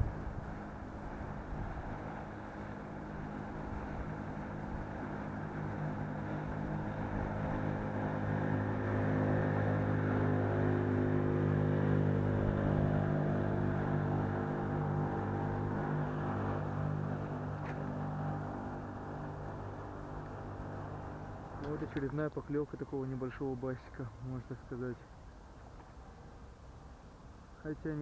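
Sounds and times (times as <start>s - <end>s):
motor engine running: 0.0s - 22.1s.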